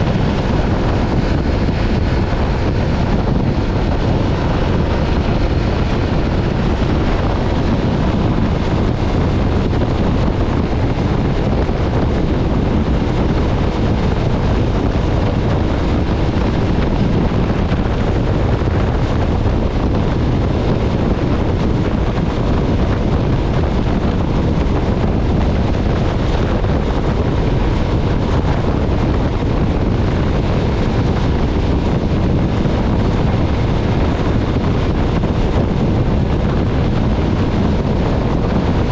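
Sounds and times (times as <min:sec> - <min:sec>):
motorcycle engine running: 0:00.0 - 0:38.9
wind buffeting microphone: 0:00.0 - 0:38.9.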